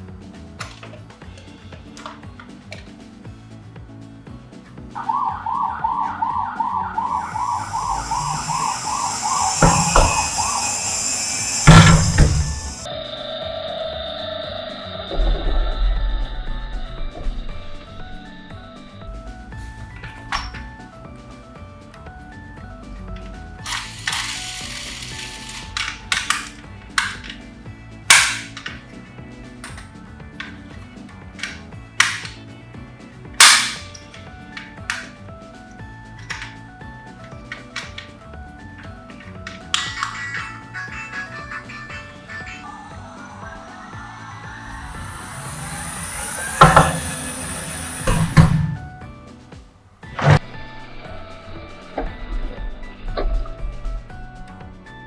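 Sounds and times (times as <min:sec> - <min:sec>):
faint background music: 0:00.0 - 0:55.0
loud thumps: 0:05.0 - 0:12.9, 0:43.5 - 0:49.0
toy siren yelping: 0:05.0 - 0:12.9, 0:23.6 - 0:27.2, 0:39.6 - 0:48.1
high hiss: 0:06.8 - 0:12.9, 0:19.2 - 0:32.6, 0:33.5 - 0:49.0
toy cars clattering: 0:23.2 - 0:32.5, 0:33.4 - 0:42.6.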